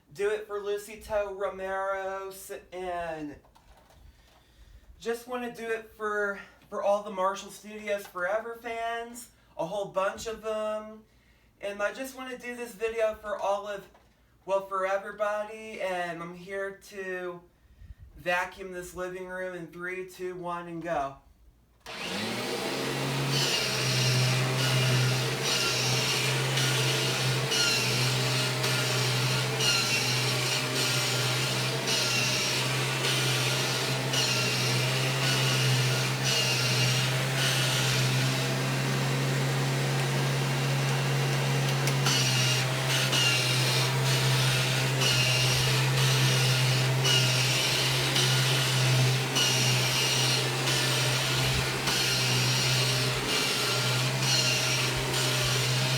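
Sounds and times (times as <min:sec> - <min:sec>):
upright vacuum cleaner running: 0:21.9 - 0:55.9.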